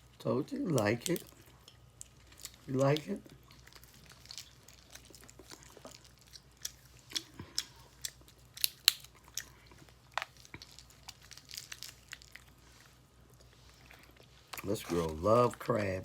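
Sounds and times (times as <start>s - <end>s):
crab shell cracking and crunching: 0.6s - 12.6s.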